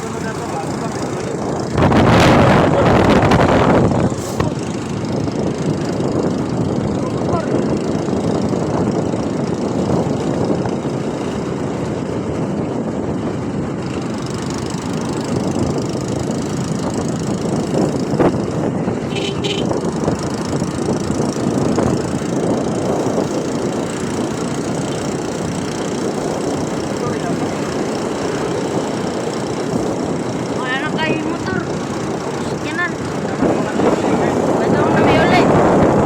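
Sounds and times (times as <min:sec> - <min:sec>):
traffic engine and road noise: 0:00.0 - 0:36.0.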